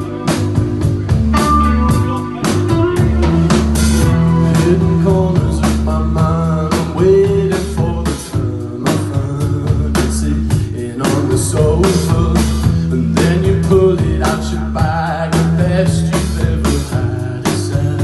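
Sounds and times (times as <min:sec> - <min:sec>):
guitar melody notes: 0:00.0 - 0:07.3
blues-rock band playing live: 0:00.0 - 0:18.0.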